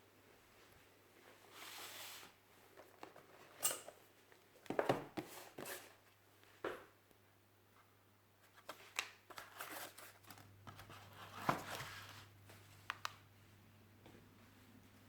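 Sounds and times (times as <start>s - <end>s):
hands handling packaging: 8.4s - 13.2s.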